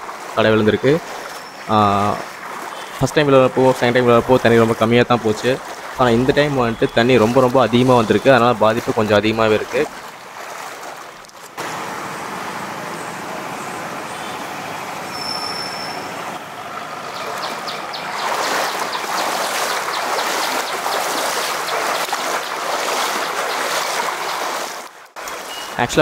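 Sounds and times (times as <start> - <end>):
fast-flowing floodwater rushing: 0.0 - 26.0.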